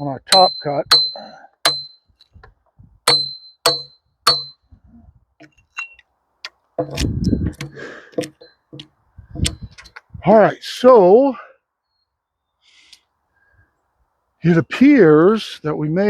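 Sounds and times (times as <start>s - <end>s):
hatchet chopping into log: 3.1s - 4.5s, 6.8s - 9.6s.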